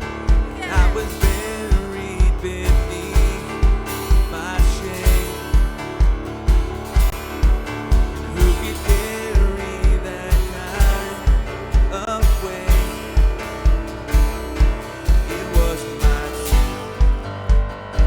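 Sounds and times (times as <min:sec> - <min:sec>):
kick drum thumping: 0:00.0 - 0:18.0
worship band music: 0:00.0 - 0:18.0.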